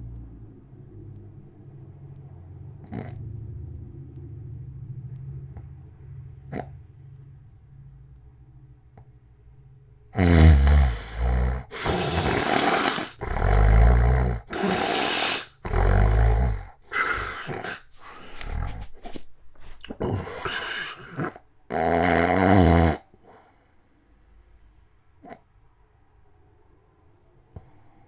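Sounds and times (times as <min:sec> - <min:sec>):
man snoring loudly: 0:10.2 - 0:19.1, 0:19.7 - 0:23.0
rushing breaths: 0:10.2 - 0:21.4
short choppy snorts: 0:10.2 - 0:21.9.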